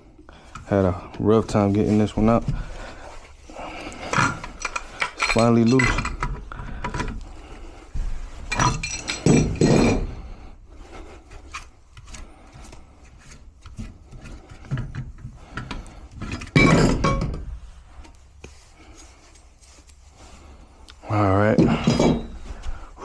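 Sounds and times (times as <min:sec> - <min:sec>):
metal wrenches clinking and clanking: 0:03.8 - 0:07.2, 0:08.5 - 0:10.2, 0:16.2 - 0:17.6, 0:21.6 - 0:22.5.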